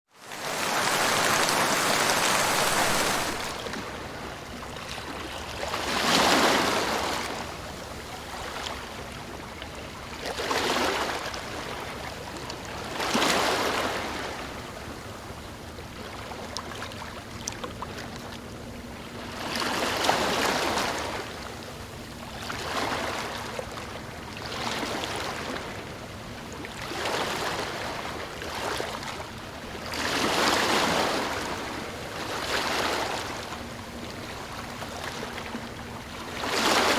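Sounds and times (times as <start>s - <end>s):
sea waves washing onto beach: 0.2s - 3.9s.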